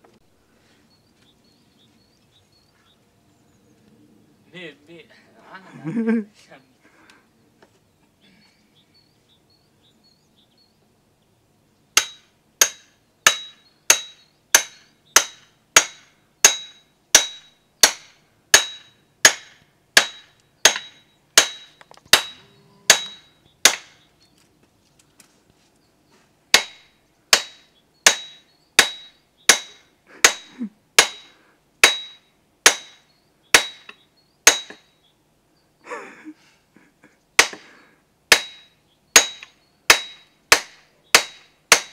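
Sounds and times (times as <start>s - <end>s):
ringing metallic strikes: 20.0s - 23.8s.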